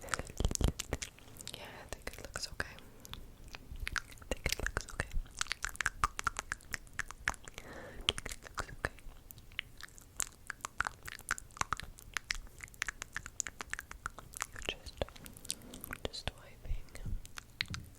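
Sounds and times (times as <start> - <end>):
wet mouth clicks and smacks: 0.0 - 16.0, 17.2 - 17.9
breathy hiss: 7.6 - 8.2.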